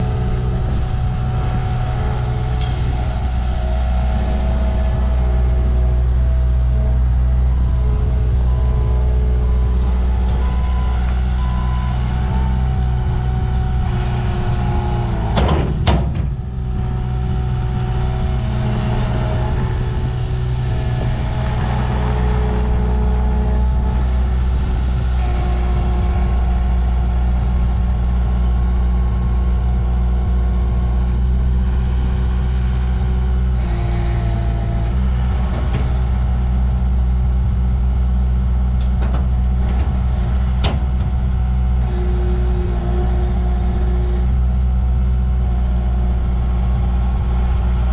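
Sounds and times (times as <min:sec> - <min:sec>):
diesel engine running: 0:00.0 - 0:47.9
backup alarm beeping: 0:06.3 - 0:13.8.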